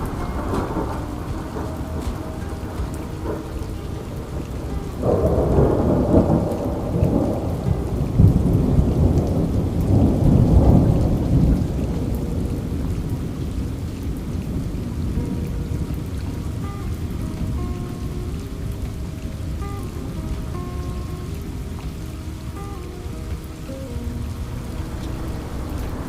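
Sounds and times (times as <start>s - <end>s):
rolling thunder: 0.0s - 26.0s
steady rain: 0.0s - 26.0s.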